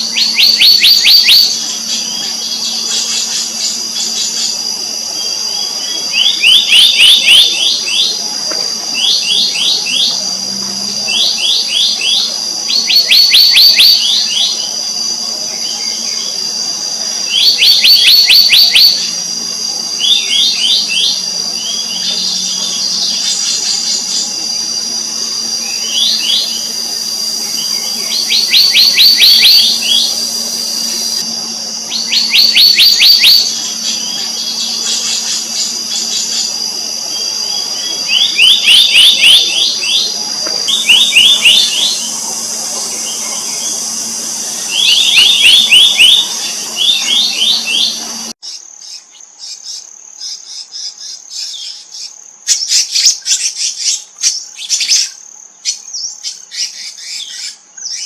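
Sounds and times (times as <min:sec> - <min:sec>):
high-pitched drone: 0:00.0 - 0:48.4
bird calling sharp high notes: 0:20.0 - 0:48.3.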